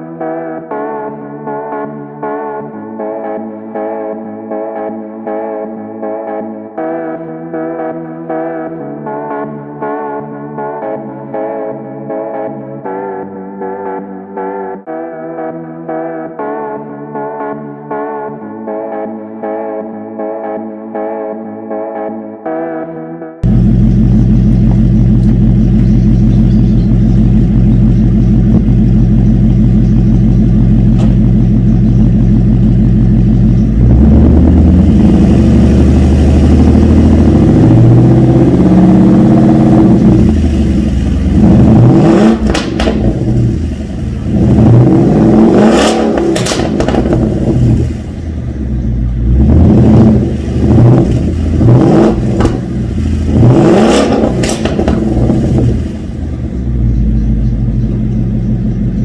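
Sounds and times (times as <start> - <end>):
car engine idling and revving: 23.4 - 59.0.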